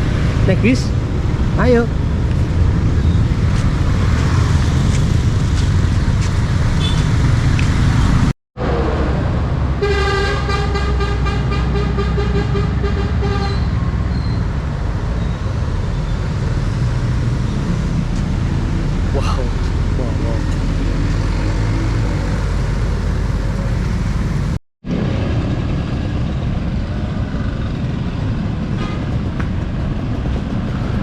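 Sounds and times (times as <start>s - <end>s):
bus engine and road rumble: 0.0s - 31.0s
pulsing vehicle horn: 6.8s - 7.2s, 9.8s - 13.8s.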